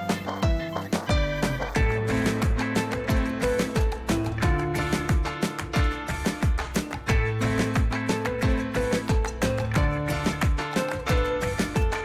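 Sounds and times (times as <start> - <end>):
background music with steady beat: 0.0 - 12.0.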